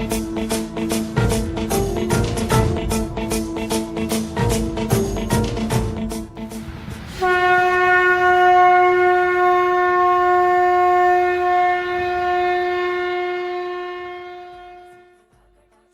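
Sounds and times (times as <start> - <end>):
conch shell blown: 7.2 - 15.3.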